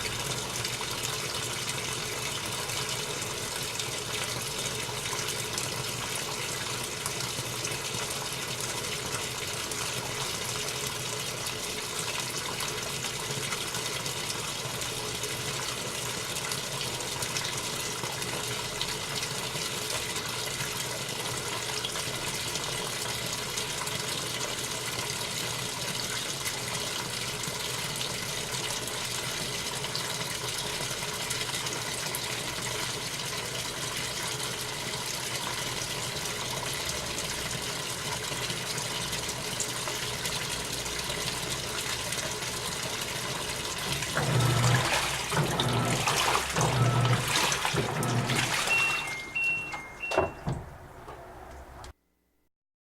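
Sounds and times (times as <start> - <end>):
water rushing in washing machine: 0.0 - 51.9.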